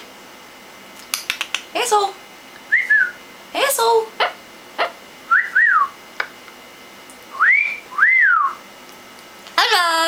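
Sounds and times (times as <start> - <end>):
parrot whistling: 2.7 - 3.2, 4.2 - 6.0, 7.3 - 8.6.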